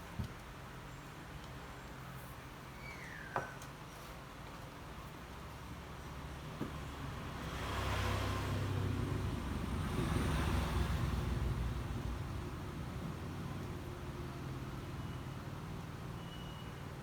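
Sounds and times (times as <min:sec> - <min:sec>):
road vehicle passing by: 0:06.2 - 0:16.2.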